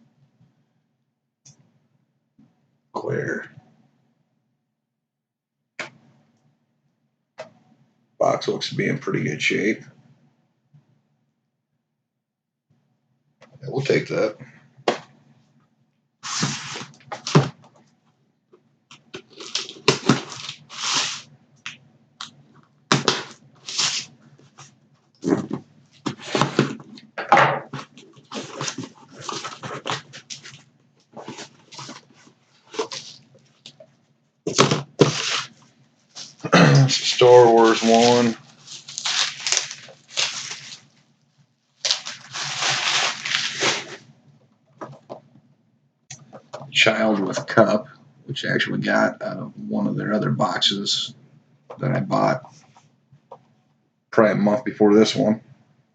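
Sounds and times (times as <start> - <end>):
packaging rustling and tearing: 16.2 - 17.5, 19.2 - 21.2, 22.9 - 26.8, 27.7 - 33.7, 34.5 - 35.6, 37.0 - 41.0, 41.8 - 44.0.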